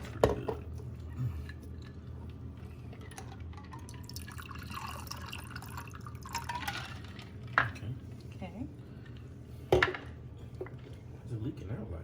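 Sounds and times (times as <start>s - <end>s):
low steady hum: 0.0s - 12.0s
liquid trickling into glass: 3.2s - 7.2s.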